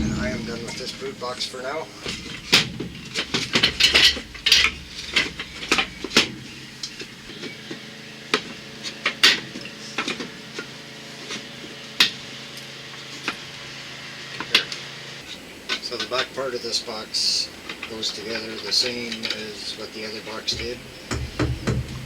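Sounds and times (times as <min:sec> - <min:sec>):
faint steady hum: 0:00.0 - 0:08.8.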